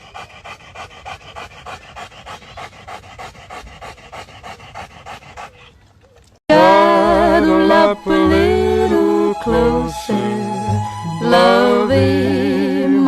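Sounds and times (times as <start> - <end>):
dog panting fast: 0.0 - 6.0.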